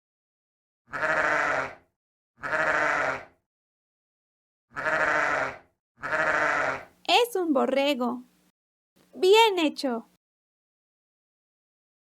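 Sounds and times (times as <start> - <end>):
sheep bleating: 0.9 - 1.8, 2.4 - 3.4, 4.7 - 6.9.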